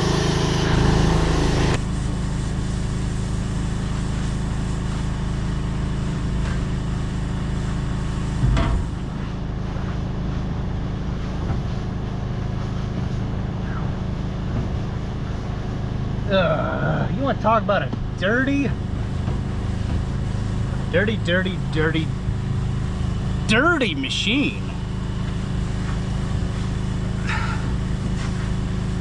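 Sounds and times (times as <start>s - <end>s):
compressed air hissing: 0.0s - 5.4s, 25.2s - 29.0s
engine running: 0.0s - 29.0s.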